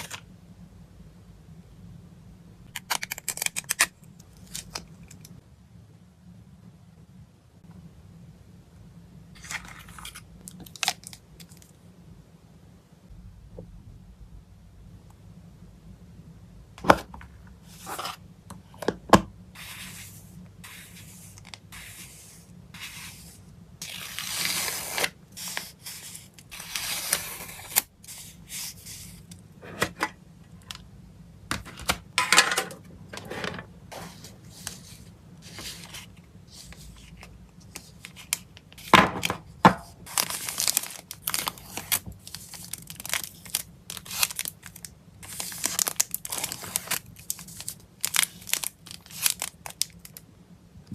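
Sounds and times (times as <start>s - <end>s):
plastic packaging crinkling: 40.0s - 50.2s.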